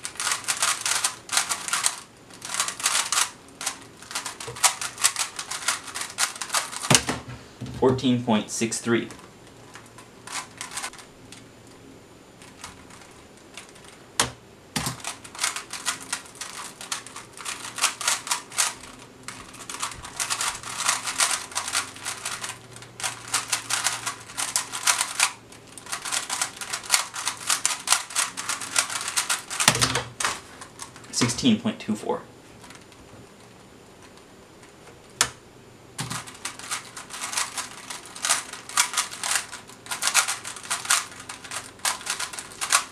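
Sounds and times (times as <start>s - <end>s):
puzzle cube plastic clicking: 12.4s - 31.4s, 36.0s - 42.9s.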